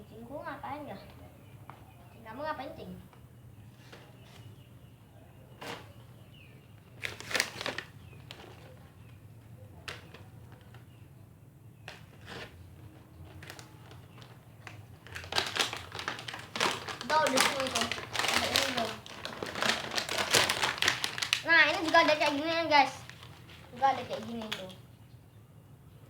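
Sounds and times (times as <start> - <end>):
plastic packaging crinkling: 6.9 - 9.1, 11.9 - 24.8.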